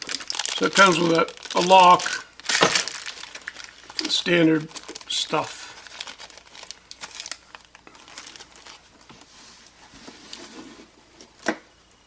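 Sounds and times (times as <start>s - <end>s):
packaging crinkling and rustling: 0.0s - 11.5s.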